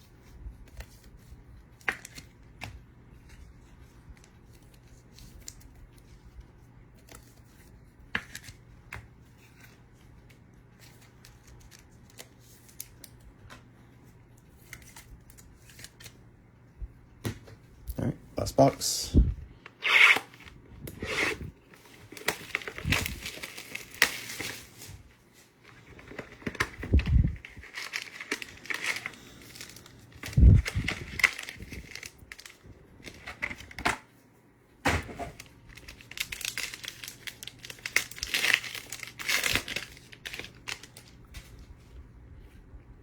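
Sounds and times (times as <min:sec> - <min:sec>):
wrappers crinkling and tearing: 0:19.8 - 0:33.9, 0:35.3 - 0:41.6.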